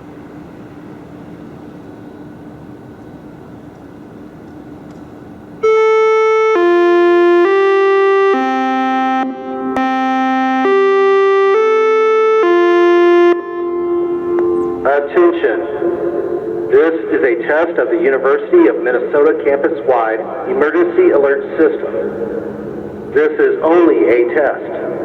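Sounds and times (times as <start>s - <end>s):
low background noise: 0.0s - 25.0s
electronic alert chime melody: 13.0s - 14.9s.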